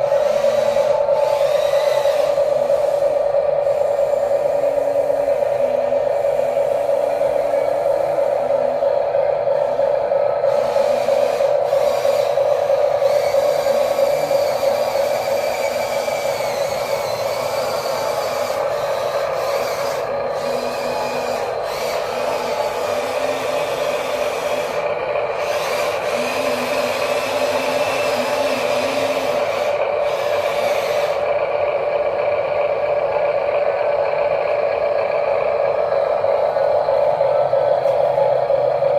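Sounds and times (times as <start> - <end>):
toy electric motors whining: 0.0 - 38.9.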